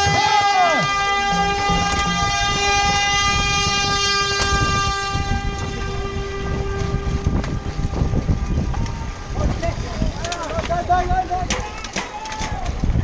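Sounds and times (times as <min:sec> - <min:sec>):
horn long steady note: 0:00.0 - 0:10.2.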